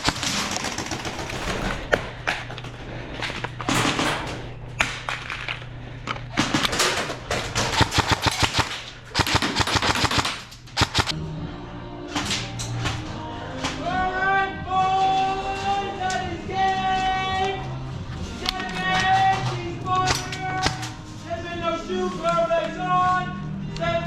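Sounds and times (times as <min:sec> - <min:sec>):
airsoft guns firing bursts: 0:00.0 - 0:01.7, 0:06.3 - 0:11.2
low hum: 0:00.0 - 0:23.8.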